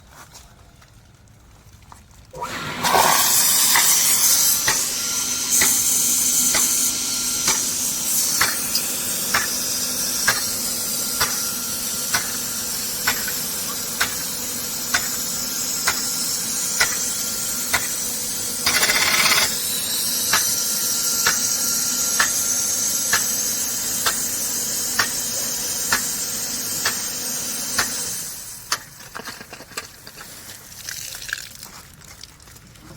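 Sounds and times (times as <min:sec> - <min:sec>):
sprinkler jet hissing: 0:03.0 - 0:27.9.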